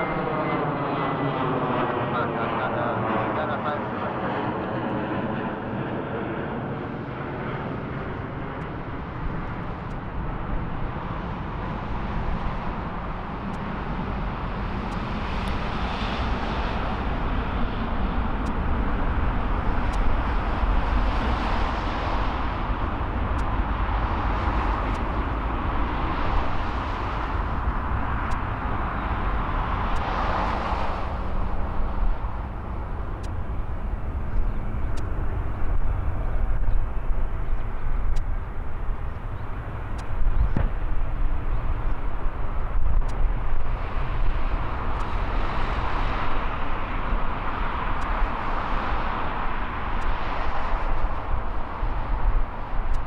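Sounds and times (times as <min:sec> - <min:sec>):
jet engines rumbling: 0:00.0 - 0:53.0.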